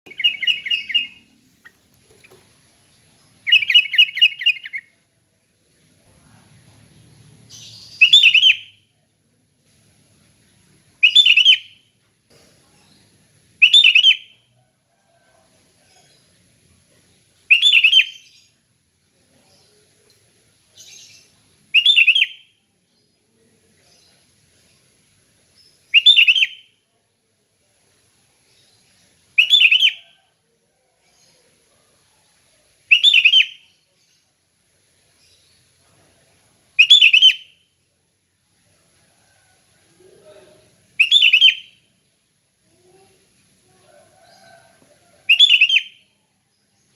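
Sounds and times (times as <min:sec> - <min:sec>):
bulbul singing: 0:00.1 - 0:04.9, 0:07.4 - 0:08.9, 0:12.9 - 0:14.4, 0:17.5 - 0:18.6, 0:29.4 - 0:30.1, 0:32.9 - 0:34.2, 0:36.8 - 0:37.7, 0:40.9 - 0:41.9, 0:45.3 - 0:46.2.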